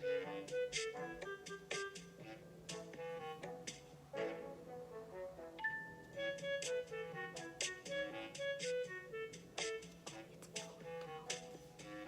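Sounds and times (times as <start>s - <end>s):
upbeat tune of plucked notes: 5.6s - 6.2s.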